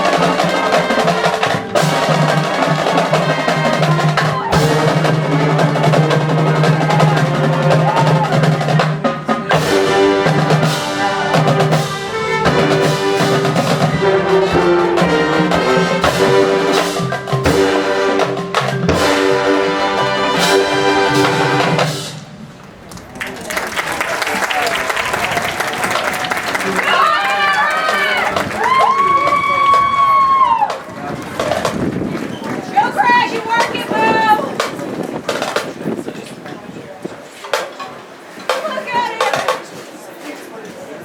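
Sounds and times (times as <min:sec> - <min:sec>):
sharp drum hits: 0:00.0 - 0:22.4
marching band playing: 0:00.0 - 0:36.5, 0:37.4 - 0:40.2.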